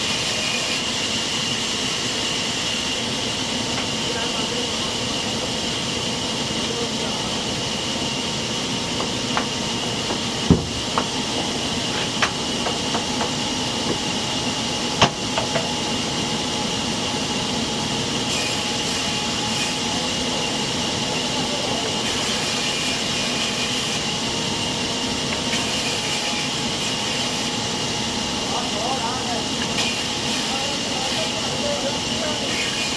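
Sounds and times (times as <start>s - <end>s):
saw high whine: 0.0s - 32.9s
sawmill machinery running: 0.0s - 32.9s
sharp wooden knocks: 9.0s - 11.2s, 12.1s - 14.0s, 15.0s - 15.7s.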